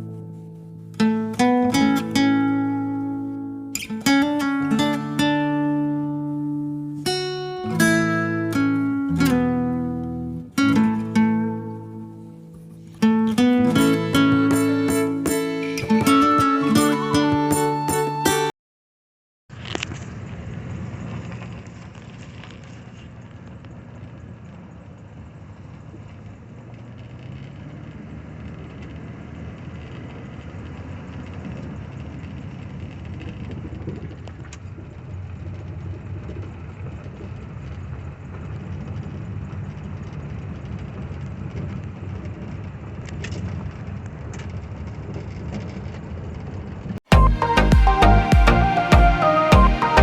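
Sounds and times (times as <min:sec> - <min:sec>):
music: 0:00.0 - 0:18.5, 0:47.1 - 0:50.0
truck engine rumbling: 0:00.0 - 0:18.5, 0:19.5 - 0:50.0.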